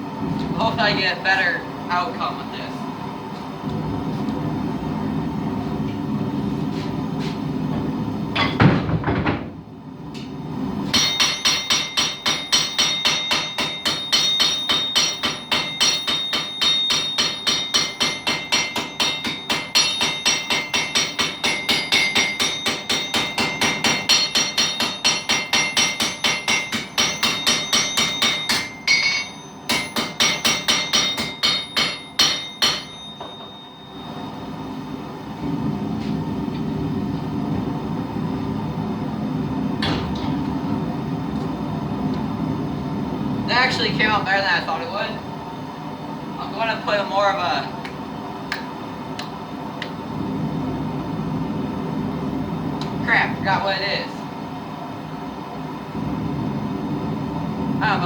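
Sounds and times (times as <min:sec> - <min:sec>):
hammer striking hot steel: 0:10.8 - 0:34.3.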